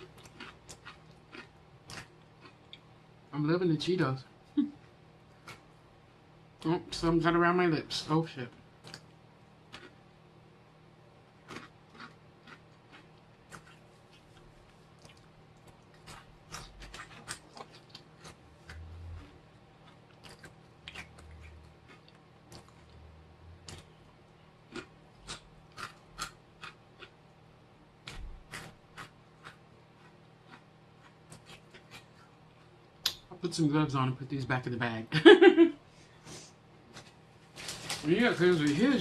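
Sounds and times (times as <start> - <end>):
person chewing crunchy snacks: 0.0 - 2.9, 9.7 - 10.0, 11.4 - 23.0, 23.6 - 24.0, 24.6 - 27.3, 28.0 - 32.4.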